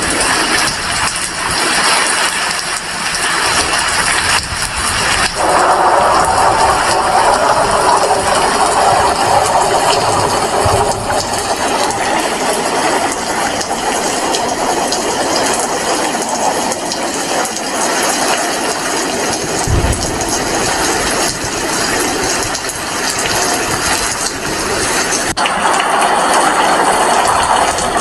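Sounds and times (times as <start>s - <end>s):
heavy rain falling: 0.0s - 28.0s
low thump: 19.7s - 20.6s.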